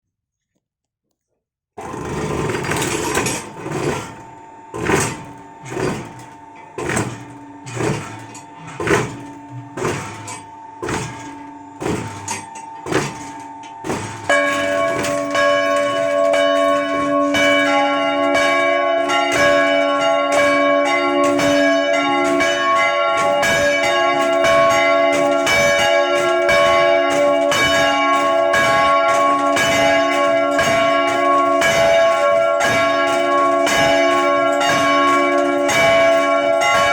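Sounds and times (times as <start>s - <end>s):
church bells ringing: 9.8s - 36.9s.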